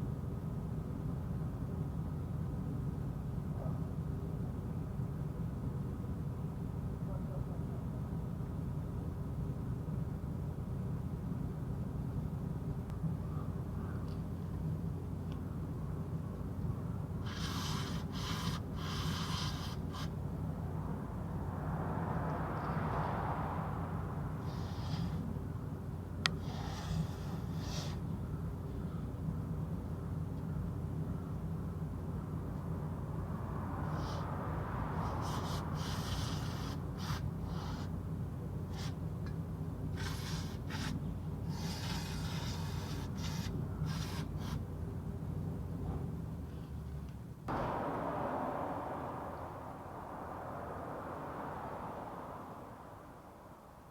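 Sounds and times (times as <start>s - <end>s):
short bursts of hissing: 17.2s - 20.1s, 26.4s - 28.0s
steady low hum: 47.5s - 53.9s.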